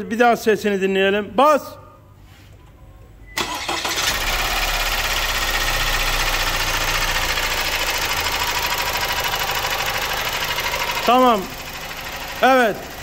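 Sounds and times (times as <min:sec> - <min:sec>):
diesel engine starting and idling: 0:03.3 - 0:13.0.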